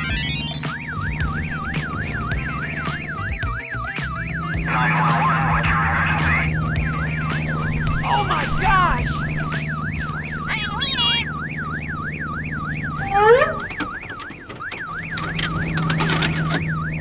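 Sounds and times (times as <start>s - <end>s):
emergency vehicle siren: 0.0s - 17.0s
squeaky gliding cries: 10.4s - 11.3s, 13.0s - 13.8s.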